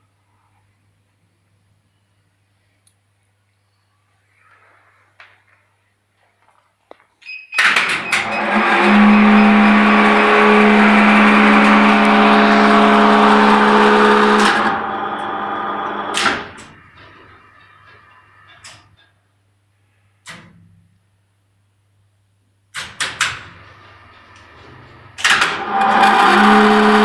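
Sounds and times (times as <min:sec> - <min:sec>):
machine humming: 0:08.0 - 0:18.6, 0:23.6 - 0:27.0.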